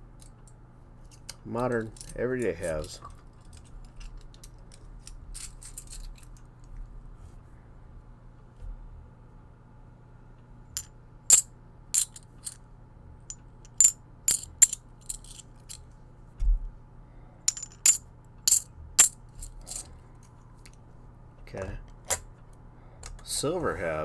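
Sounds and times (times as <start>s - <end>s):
coins clinking on a surface: 5.4s - 6.1s, 12.0s - 12.6s, 13.7s - 15.4s, 17.5s - 19.8s.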